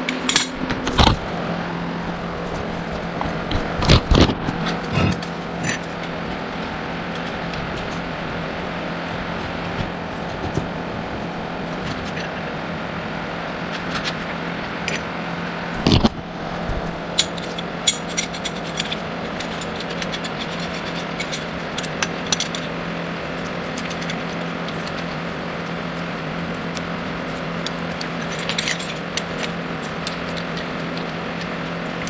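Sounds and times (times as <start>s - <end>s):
steel tools clinking on metal: 0.0s - 0.7s, 17.2s - 22.6s
steady hum: 0.0s - 32.0s.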